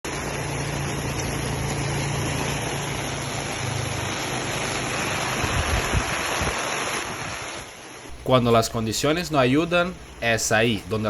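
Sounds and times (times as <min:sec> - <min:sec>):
engine humming: 0:00.0 - 0:07.0, 0:08.1 - 0:11.0
rain hissing: 0:00.1 - 0:11.0.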